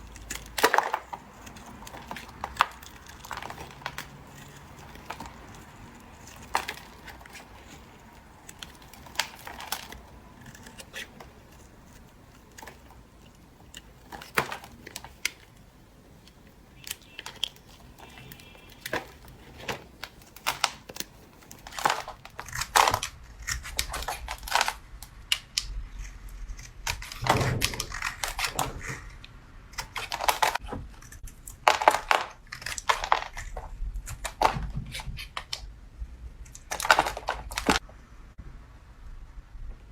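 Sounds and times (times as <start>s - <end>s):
knife cutting through soap: 0.0s - 24.8s.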